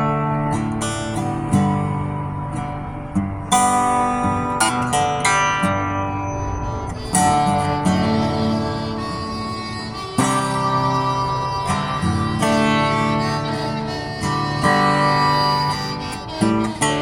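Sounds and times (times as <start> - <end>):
acoustic guitar strumming: 0.0 - 17.0
harmonica: 7.0 - 17.0.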